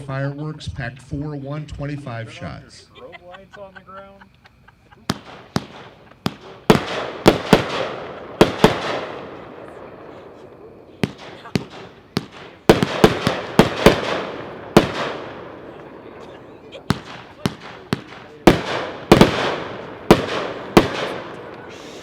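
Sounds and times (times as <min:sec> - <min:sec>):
lingering fireworks rumble: 0:00.0 - 0:22.0
fireworks launches and bursts: 0:04.3 - 0:22.0.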